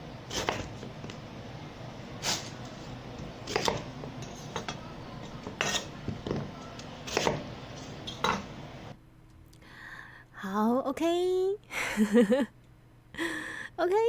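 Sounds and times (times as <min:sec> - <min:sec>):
dishes and cutlery clinking: 0:03.4 - 0:08.5.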